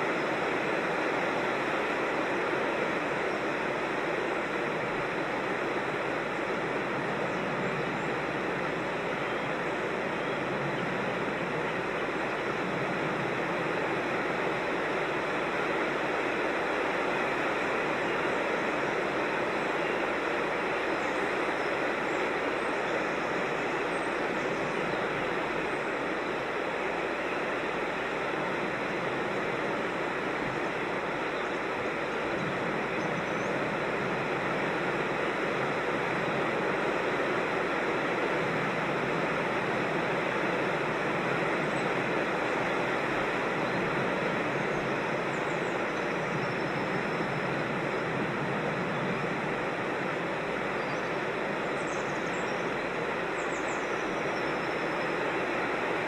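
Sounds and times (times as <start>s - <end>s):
creek water rushing over rocks: 0.0s - 56.0s
faint bird chirps: 50.7s - 55.4s.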